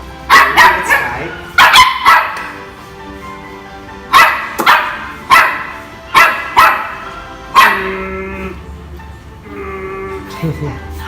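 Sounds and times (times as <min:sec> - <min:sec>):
dog barking: 0:00.3 - 0:02.6, 0:04.1 - 0:08.1.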